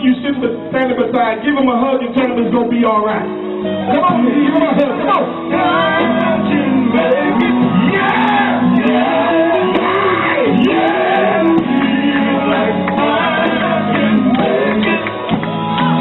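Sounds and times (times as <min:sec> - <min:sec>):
gospel group playing: 0:00.0 - 0:16.0
man shouting and singing: 0:03.8 - 0:15.2.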